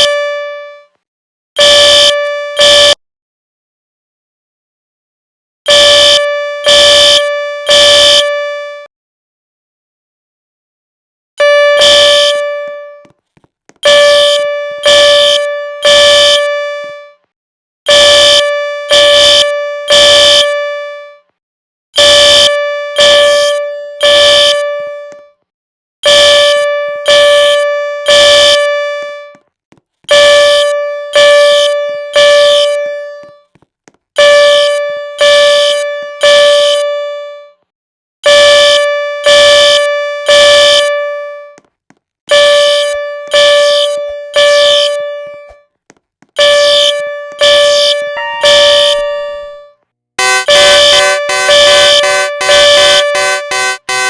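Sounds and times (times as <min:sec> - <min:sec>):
fire alarm horn beeping: 0:00.0 - 0:01.0, 0:01.6 - 0:03.0, 0:05.7 - 0:08.9, 0:11.4 - 0:13.0, 0:13.8 - 0:17.2, 0:17.9 - 0:21.3, 0:22.0 - 0:25.4, 0:26.0 - 0:29.4, 0:30.1 - 0:33.5, 0:34.2 - 0:37.6, 0:38.2 - 0:41.6, 0:42.3 - 0:45.7, 0:46.4 - 0:54.0.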